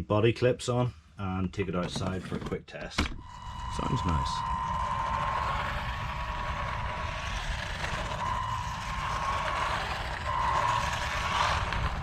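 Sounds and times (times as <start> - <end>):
electric motor whining: 3.2 - 12.0
gear and drive rumble: 3.2 - 12.0.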